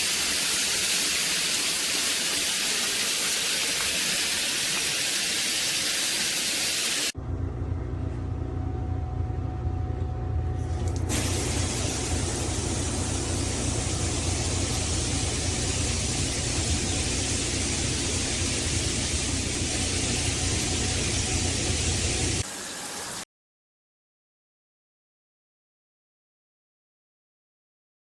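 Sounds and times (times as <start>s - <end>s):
water spraying from shower head: 0.0s - 7.2s, 10.7s - 23.2s.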